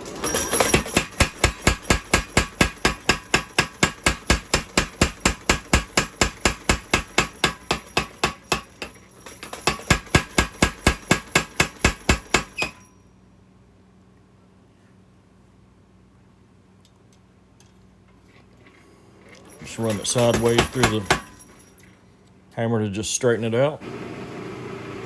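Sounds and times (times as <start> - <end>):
power hammer striking hot steel: 0.0 - 12.9, 19.6 - 21.6.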